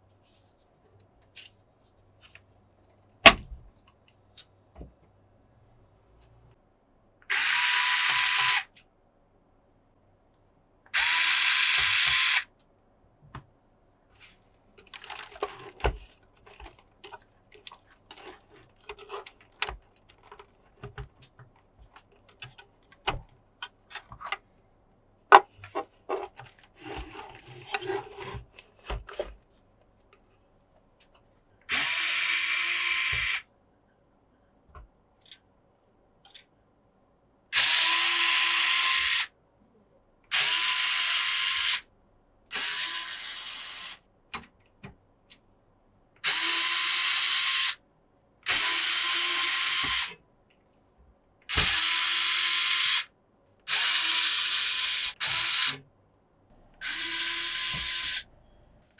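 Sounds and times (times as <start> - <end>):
electric screwdriver running: 7.3 - 8.7, 11.0 - 12.4, 31.7 - 33.4, 37.6 - 39.3, 40.3 - 41.8, 42.6 - 44.0, 46.2 - 47.8, 48.5 - 50.1, 51.5 - 53.1, 53.7 - 55.8, 56.8 - 58.2.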